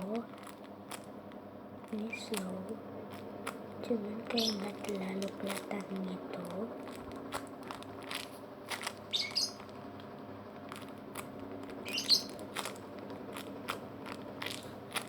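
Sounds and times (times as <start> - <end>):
low background hum: 0.0 - 15.0
bird chirping: 4.0 - 5.2, 9.0 - 9.7, 11.7 - 12.7.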